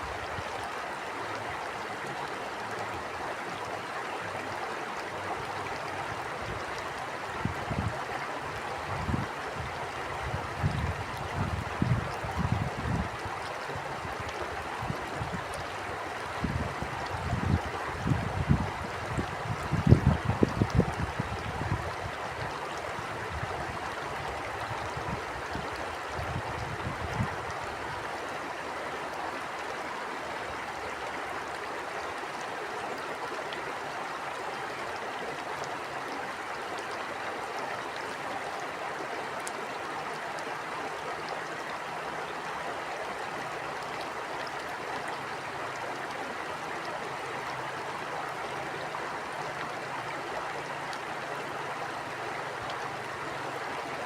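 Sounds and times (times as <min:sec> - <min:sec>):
flowing stream: 0:00.0 - 0:54.0
wind rumbling on microphone: 0:06.4 - 0:28.1.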